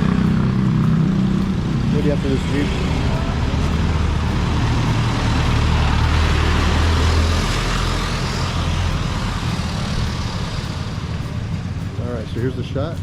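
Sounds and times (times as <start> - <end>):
diesel engine driving past: 0.0 - 13.0
traffic noise: 0.0 - 13.0.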